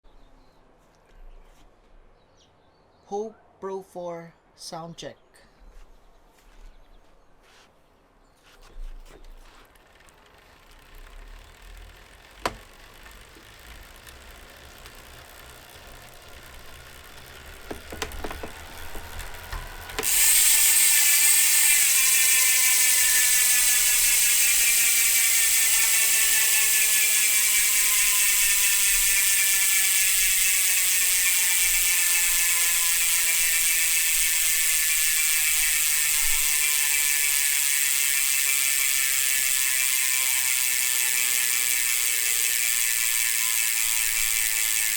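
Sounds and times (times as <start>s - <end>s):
bicycle hub freewheel buzzing: 8.8s - 44.9s
faint clicks and knocks: 9.0s - 37.8s.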